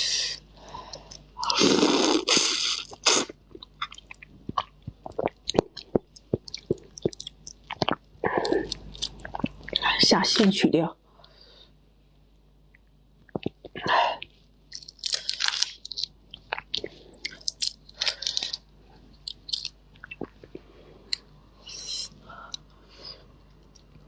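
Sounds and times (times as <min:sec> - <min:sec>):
person chewing and crunching: 0:00.9 - 0:09.8, 0:14.7 - 0:21.3.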